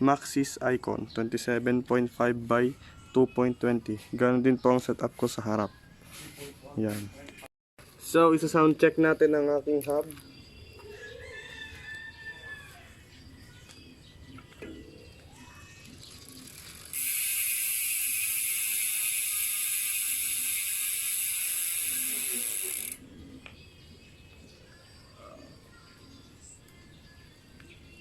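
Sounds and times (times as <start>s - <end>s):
bicycle hub ratcheting: 16.0s - 23.0s.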